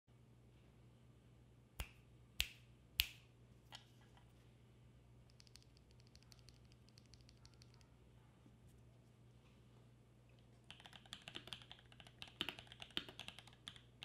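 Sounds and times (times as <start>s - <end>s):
typing on mechanical keyboard: 10.7s - 14.0s.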